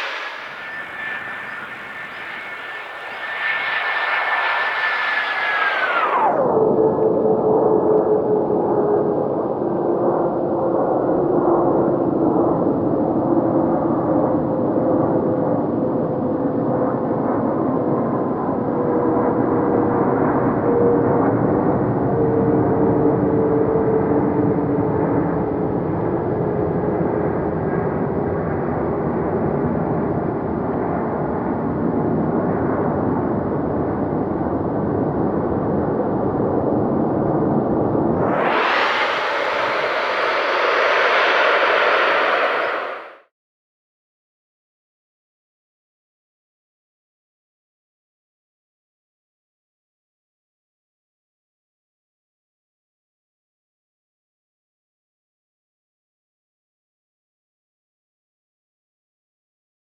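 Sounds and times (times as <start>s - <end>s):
low droning tones: 0.0s - 6.0s, 38.2s - 43.2s
deep jet rumble: 0.0s - 6.3s, 37.9s - 43.2s.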